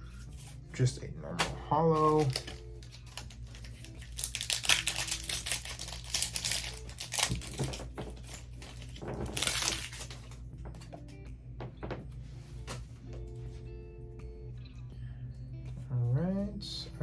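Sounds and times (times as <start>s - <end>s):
foil wrapper crinkling: 1.9s - 10.4s.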